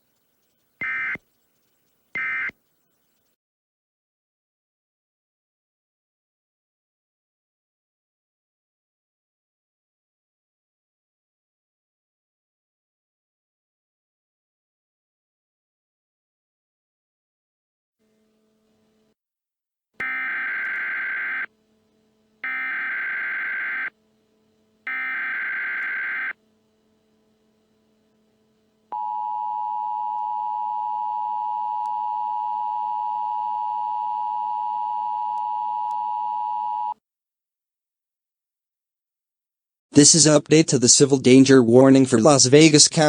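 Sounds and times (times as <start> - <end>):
steady dual-tone alert signal: 0.8 - 2.6, 20.0 - 37.0.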